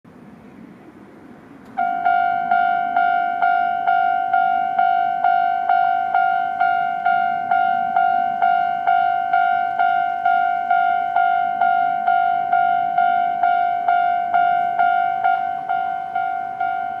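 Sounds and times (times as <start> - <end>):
level crossing warning bell: 1.8 - 17.0.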